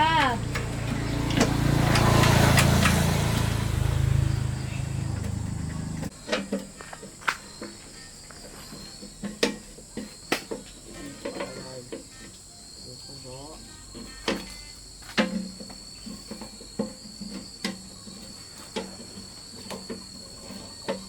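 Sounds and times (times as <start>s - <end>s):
generator engine running: 0.0s - 6.4s.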